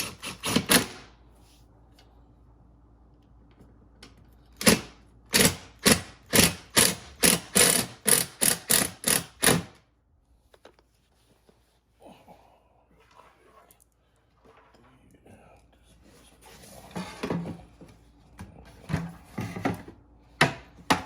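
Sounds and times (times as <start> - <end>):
ratchet wrench ratcheting: 6.3 - 9.7.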